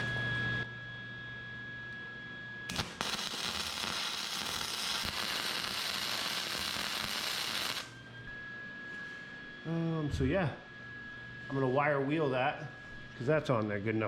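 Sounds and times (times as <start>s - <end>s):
arc welder striking snap: 2.7s - 8.0s
welding arc crackling sizzle: 2.7s - 8.0s.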